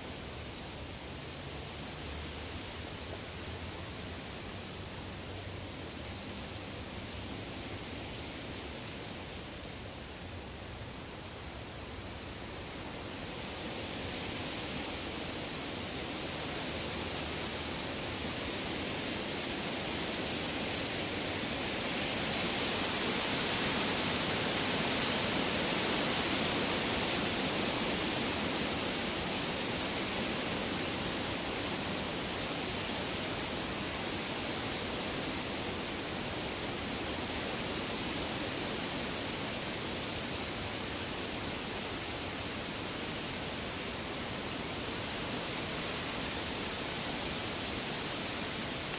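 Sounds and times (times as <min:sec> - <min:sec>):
woodland rushing noise: 0:12.8 - 0:48.9.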